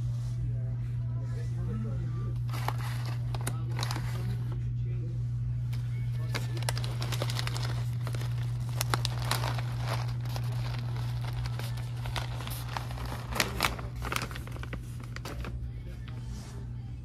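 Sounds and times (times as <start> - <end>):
steady low hum: 0.0 - 17.0
packaging crinkling: 2.4 - 4.4, 6.2 - 15.7.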